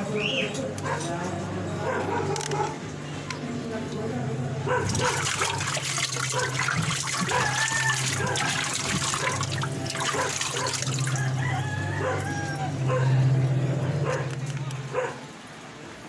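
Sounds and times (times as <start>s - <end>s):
washing machine motor hum: 0.9s - 15.3s
water rushing through drain hose: 4.7s - 14.8s.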